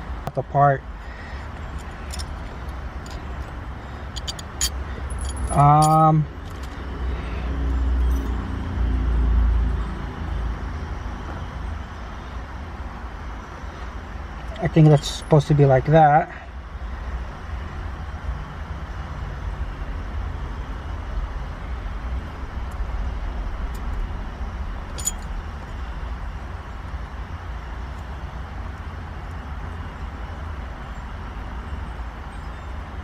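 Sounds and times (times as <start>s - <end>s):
small parts clicking: 1.6s - 6.8s.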